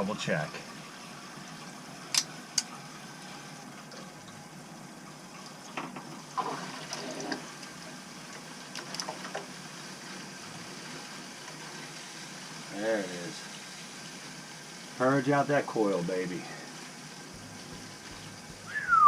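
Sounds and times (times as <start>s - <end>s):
water running: 0.0s - 19.0s.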